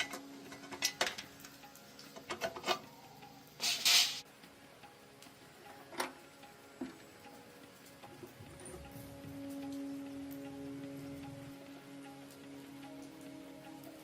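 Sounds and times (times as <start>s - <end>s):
metal parts clicking and knocking: 0.0s - 1.6s, 3.6s - 4.2s
short hissing burst: 3.6s - 4.2s.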